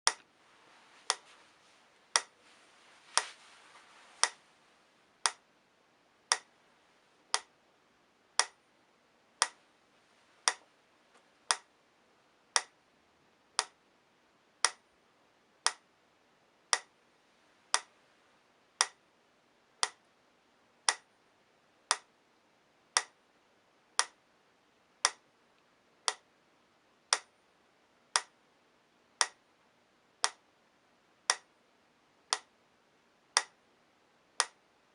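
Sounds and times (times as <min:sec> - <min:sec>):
metronome ticking: 0:00.1 - 0:00.3, 0:02.1 - 0:02.4, 0:05.2 - 0:05.5, 0:06.2 - 0:06.5, 0:07.3 - 0:07.6, 0:08.4 - 0:08.6, 0:09.4 - 0:09.6, 0:10.4 - 0:10.7, 0:11.5 - 0:11.7, 0:12.5 - 0:12.8, 0:13.5 - 0:13.8, 0:14.6 - 0:14.9, 0:15.6 - 0:15.9, 0:16.7 - 0:17.0, 0:17.7 - 0:17.9, 0:18.8 - 0:19.0, 0:19.8 - 0:20.1, 0:20.8 - 0:21.2, 0:21.8 - 0:22.2, 0:22.9 - 0:23.2, 0:24.0 - 0:24.2, 0:25.0 - 0:25.3, 0:26.0 - 0:26.3, 0:27.0 - 0:27.4, 0:28.1 - 0:28.4, 0:29.1 - 0:29.4, 0:30.2 - 0:30.5, 0:31.2 - 0:31.5, 0:32.2 - 0:32.5, 0:33.3 - 0:33.6, 0:34.3 - 0:34.6.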